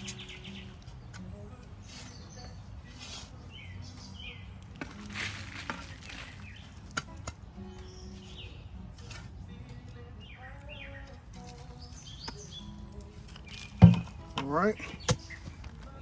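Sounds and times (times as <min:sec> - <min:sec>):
bird chirping: 0:00.0 - 0:04.8, 0:05.7 - 0:15.9
shovel scraping soil: 0:01.8 - 0:03.6, 0:04.8 - 0:07.4.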